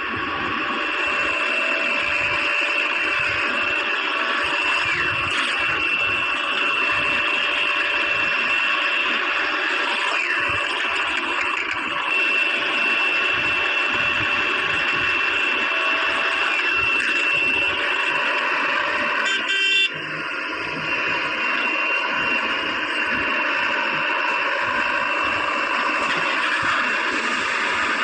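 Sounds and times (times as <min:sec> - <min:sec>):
heavy machinery engines: 0:00.0 - 0:28.0
steady high whine: 0:00.0 - 0:28.0
short vehicle horn: 0:19.2 - 0:19.9.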